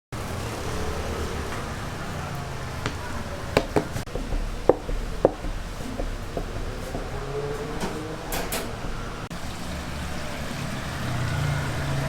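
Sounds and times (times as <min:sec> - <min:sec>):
steady background hum: 0:01.4 - 0:09.5
sharp knocks: 0:02.8 - 0:09.3.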